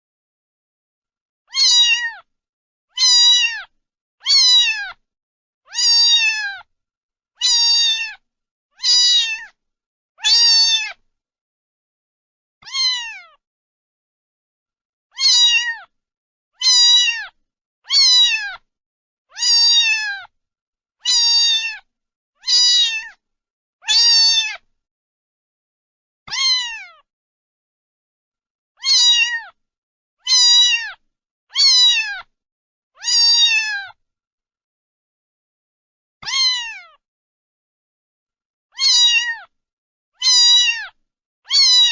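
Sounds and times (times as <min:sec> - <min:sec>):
cat meowing: 0:01.5 - 0:02.3, 0:02.9 - 0:05.0, 0:05.7 - 0:06.7, 0:07.4 - 0:08.2, 0:08.8 - 0:09.6, 0:10.2 - 0:11.0, 0:12.6 - 0:13.4, 0:15.1 - 0:15.9, 0:16.6 - 0:18.7, 0:19.3 - 0:20.3, 0:21.0 - 0:23.2, 0:23.8 - 0:24.7, 0:26.3 - 0:27.1, 0:28.8 - 0:29.6, 0:30.2 - 0:32.3, 0:33.0 - 0:34.0, 0:36.2 - 0:37.0, 0:38.7 - 0:39.5, 0:40.2 - 0:41.9.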